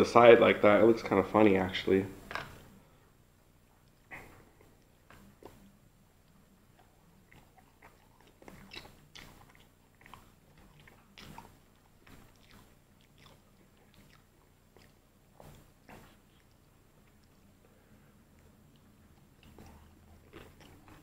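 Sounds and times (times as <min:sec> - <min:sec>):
crunchy chewing: 0:03.7 - 0:21.0.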